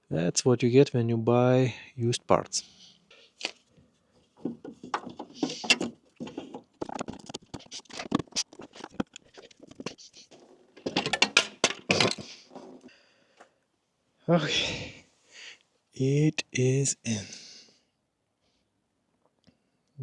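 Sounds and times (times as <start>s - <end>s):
plastic bracket clicking and knocking: 4.4s - 12.9s.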